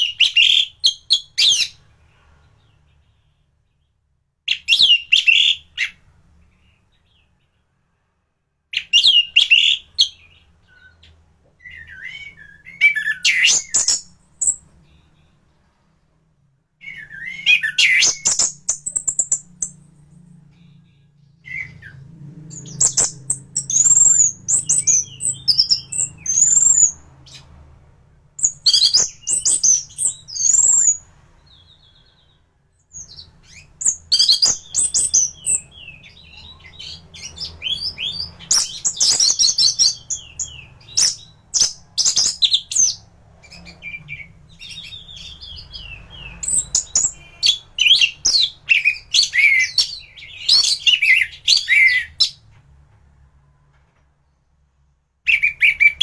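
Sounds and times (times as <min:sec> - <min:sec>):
faint low hum: 0:05.7 - 0:47.8.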